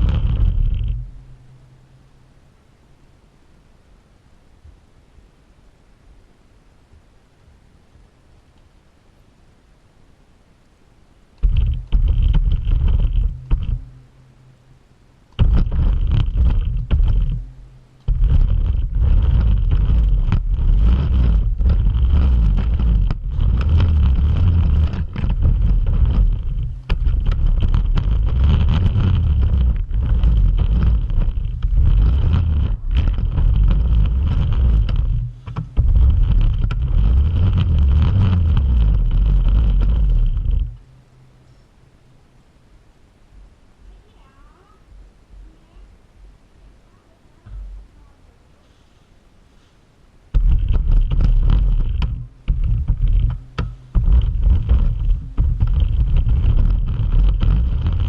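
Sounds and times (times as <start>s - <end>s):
wheels rumbling on floor: 0.0s - 1.6s, 11.4s - 14.6s, 15.3s - 40.9s, 50.3s - 58.0s.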